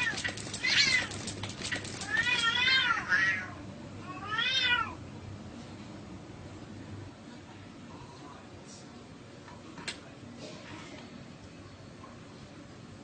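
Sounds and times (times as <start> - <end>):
sharp clicks: 0.0 - 2.5
cats yowling: 0.0 - 5.0.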